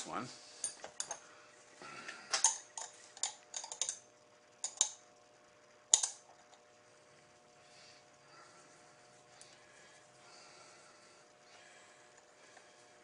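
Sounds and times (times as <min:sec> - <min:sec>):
metallic clicks of small hardware: 0:02.3 - 0:04.0, 0:04.6 - 0:05.0, 0:05.9 - 0:06.2.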